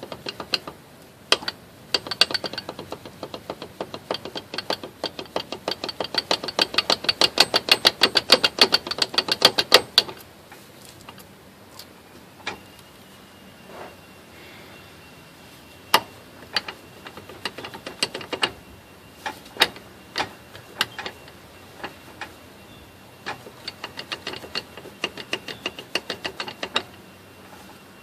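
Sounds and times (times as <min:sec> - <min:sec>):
sharp metallic drivetrain clicks: 0:00.0 - 0:10.2, 0:15.9 - 0:27.7.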